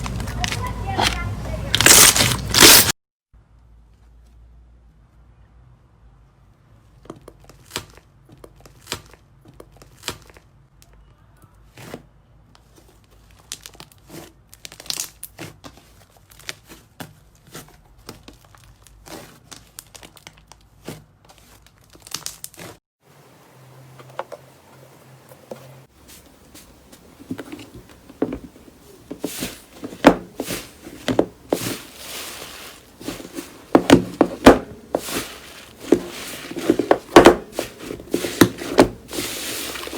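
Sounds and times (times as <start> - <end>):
slime crackling and popping: 0.0 - 2.9, 13.3 - 15.4.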